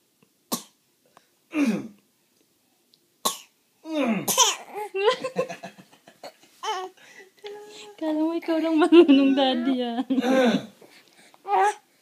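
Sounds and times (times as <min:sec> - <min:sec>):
baby pretend coughing: 0:03.2 - 0:04.9
baby laughing and babbling: 0:04.4 - 0:05.2, 0:06.2 - 0:08.0, 0:11.4 - 0:11.8.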